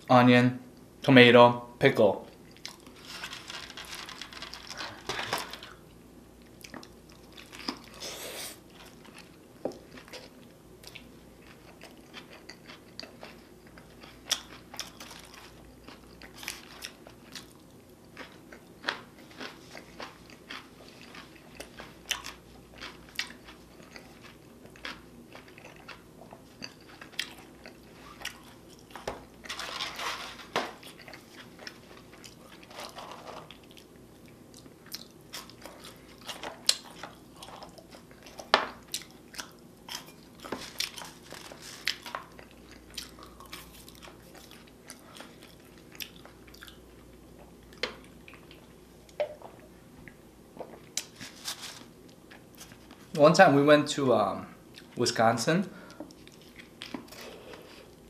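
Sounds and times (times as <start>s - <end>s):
crunchy chewing: 8.7s - 48.8s.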